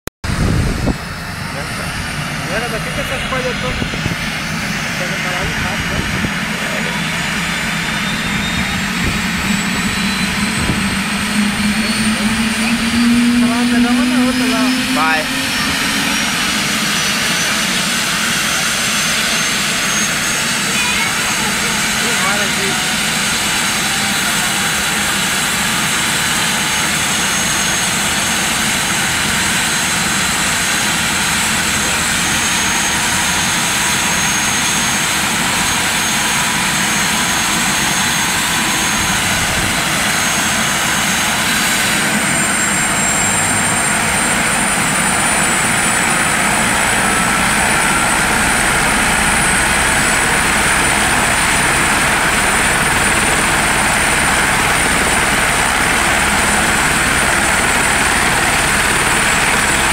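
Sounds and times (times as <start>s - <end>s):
helicopter engine whine: 0.2s - 59.9s.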